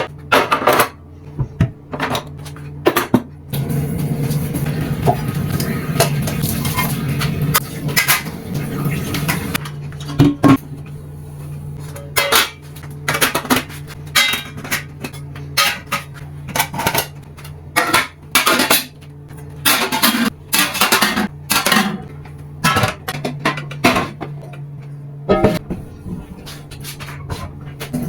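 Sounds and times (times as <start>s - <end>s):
dishes and cutlery clattering: 11.8s - 24.6s, 25.3s - 28.0s.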